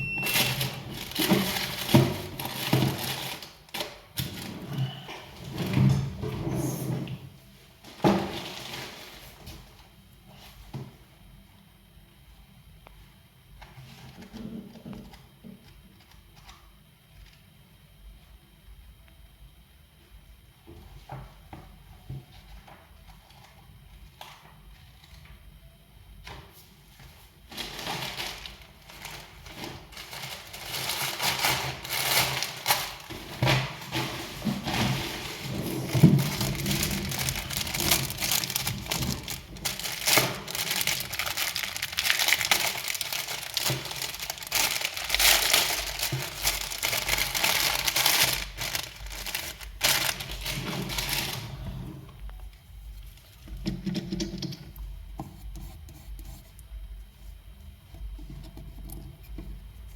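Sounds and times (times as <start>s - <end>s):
scratching and crackling: 33.9s - 51.6s.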